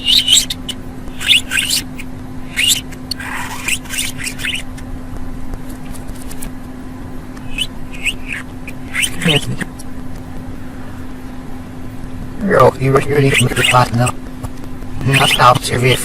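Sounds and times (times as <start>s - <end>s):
budgerigar chirping and chattering: 0.0s - 4.9s, 7.4s - 9.8s, 12.6s - 14.1s, 15.0s - 15.8s
steady low hum: 0.0s - 16.0s.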